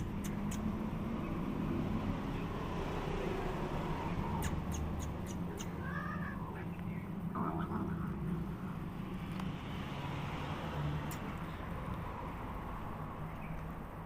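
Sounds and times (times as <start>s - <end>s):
sharp clicks: 0.0s - 0.8s, 4.4s - 5.8s, 11.0s - 12.0s
cat meowing: 5.6s - 6.7s.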